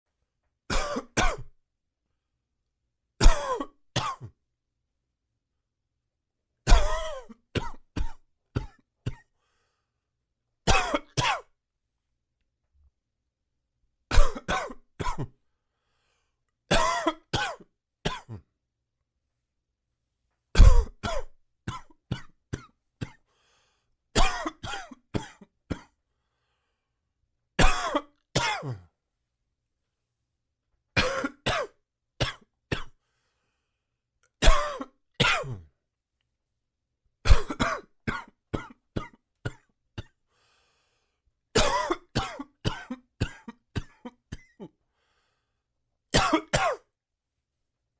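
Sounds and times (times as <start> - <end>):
man coughing: 0.7 - 1.5, 3.2 - 4.3, 6.7 - 9.2, 10.7 - 11.5, 14.1 - 15.3, 16.7 - 18.4, 20.6 - 23.2, 24.2 - 25.9, 27.6 - 28.8, 31.0 - 32.9, 34.4 - 35.7, 37.3 - 39.6, 41.6 - 44.7, 46.2 - 46.9.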